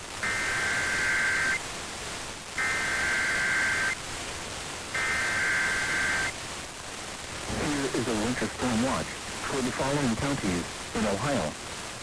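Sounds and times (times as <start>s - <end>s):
radio static hiss: 0.0s - 12.0s
two-tone digital data bursts: 0.2s - 1.6s, 2.6s - 4.0s, 5.0s - 6.3s.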